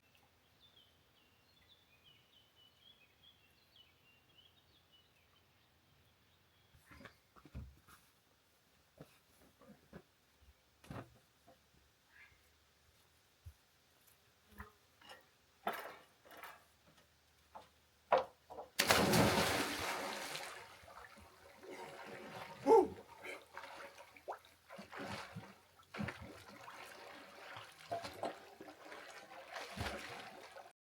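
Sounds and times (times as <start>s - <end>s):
water rushing: 18.8s - 25.4s
water sloshing: 18.8s - 30.7s.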